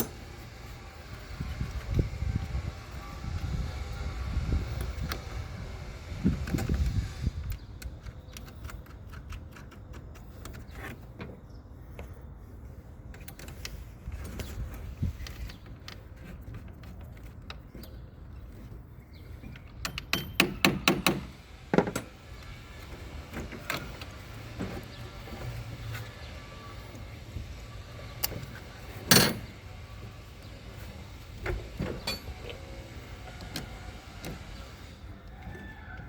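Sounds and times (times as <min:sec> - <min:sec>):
hand tools clinking: 0:32.0 - 0:32.6.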